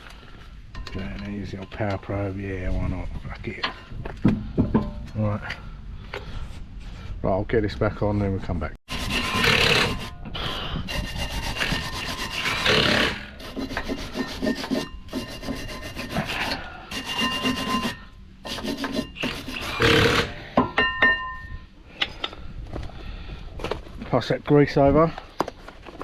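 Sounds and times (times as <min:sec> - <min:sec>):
scraping metal by hand: 0:08.9 - 0:20.4.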